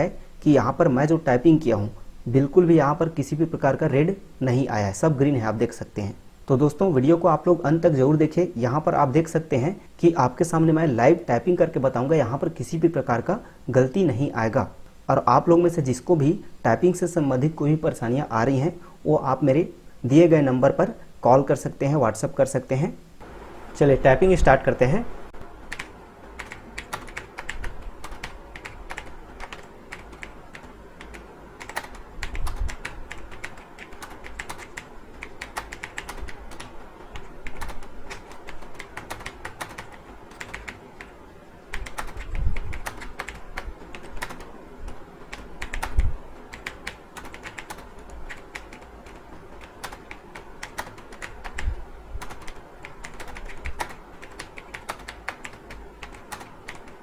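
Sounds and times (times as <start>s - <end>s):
keyboard typing: 25.4s - 57.0s.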